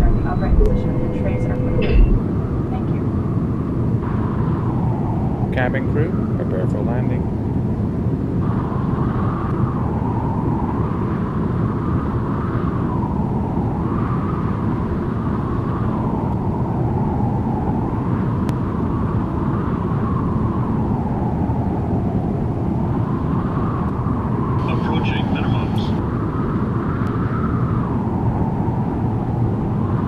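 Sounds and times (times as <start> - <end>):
airliner cabin engine rumble: 0.0 - 19.4, 23.7 - 26.8.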